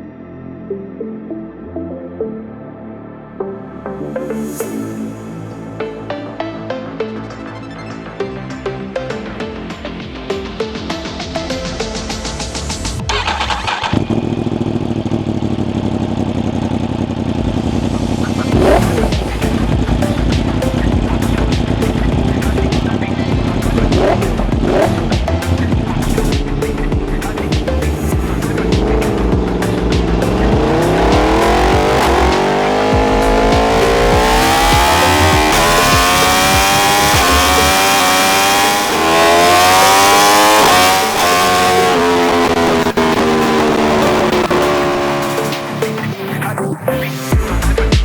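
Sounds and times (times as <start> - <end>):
music with a steady beat: 3.9 - 13.6, 17.7 - 48.0
motorcycle engine running: 12.8 - 46.1.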